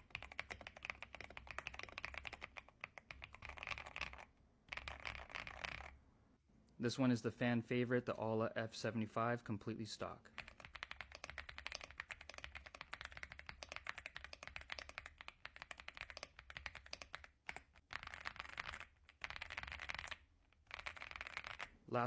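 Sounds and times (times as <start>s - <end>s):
mechanical keyboard typing: 0.0s - 6.0s, 10.4s - 21.7s.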